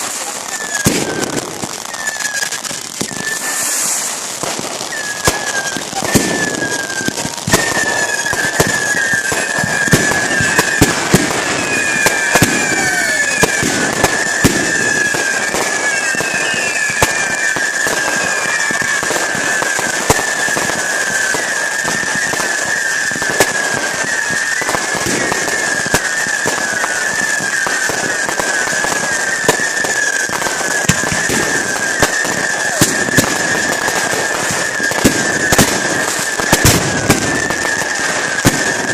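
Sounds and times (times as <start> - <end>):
fireworks bangs and crackling pops: 0.0 - 38.9
high wavering whistle: 1.9 - 4.0, 4.9 - 19.4.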